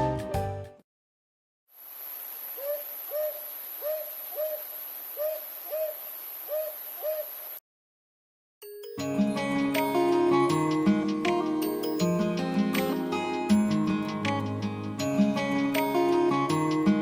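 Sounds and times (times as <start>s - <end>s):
steady hiss: 1.8s - 7.6s
owl hooting: 2.5s - 7.6s.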